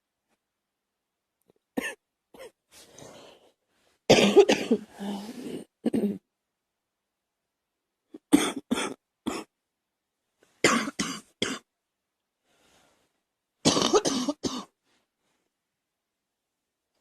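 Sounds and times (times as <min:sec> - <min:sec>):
girl coughing: 0:01.8 - 0:02.6, 0:04.1 - 0:06.2, 0:08.2 - 0:09.5, 0:10.6 - 0:11.7, 0:13.6 - 0:14.7
faint breath: 0:02.7 - 0:04.0, 0:12.4 - 0:13.2.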